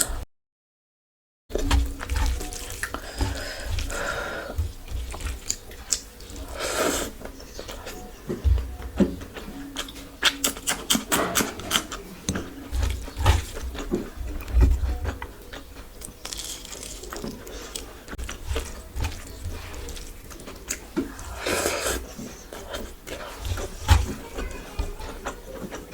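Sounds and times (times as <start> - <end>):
chewing and wet mouth sounds: 1.5 - 25.9
sharp smacks and clicks: 10.2 - 12.4.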